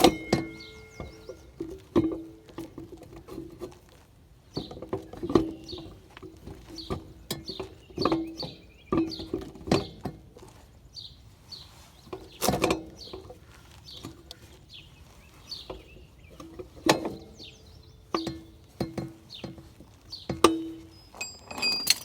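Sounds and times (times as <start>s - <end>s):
bird chirping: 0.0s - 2.8s, 4.4s - 10.1s, 10.8s - 21.6s
metal tools clanking on metal: 0.0s - 3.8s, 4.5s - 10.3s, 12.1s - 13.4s, 15.6s - 22.0s.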